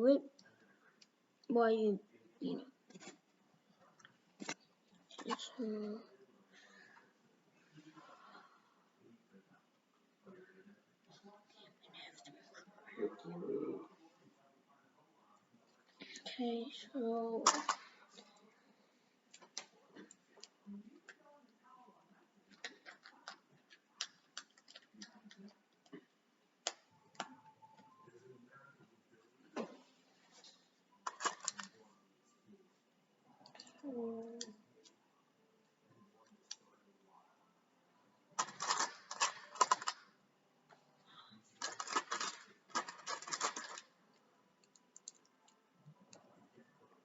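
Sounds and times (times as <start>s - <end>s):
plastic bricks clicking: 38.4s - 40.0s, 41.6s - 43.8s.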